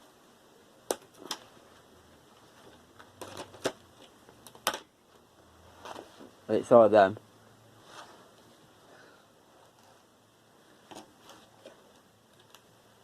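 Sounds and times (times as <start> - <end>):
computer parts clicking and knocking: 3.1 - 4.9.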